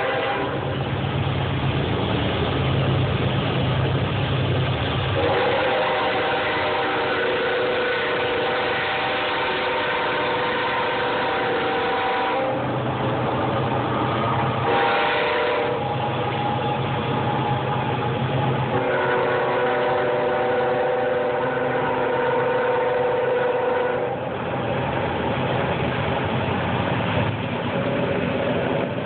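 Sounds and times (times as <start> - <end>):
large engine droning: 8.0 - 29.0.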